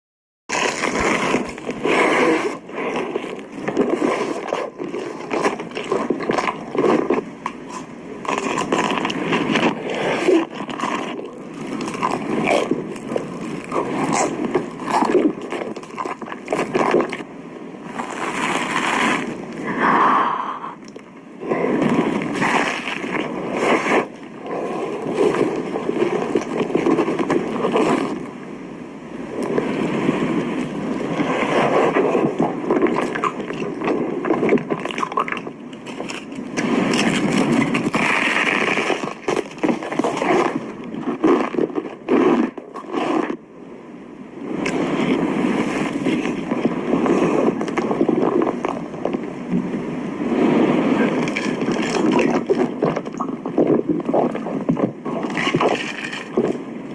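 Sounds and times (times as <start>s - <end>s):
chewing and crunching food: 0.5s - 17.3s, 31.5s - 43.4s, 51.2s - 56.6s.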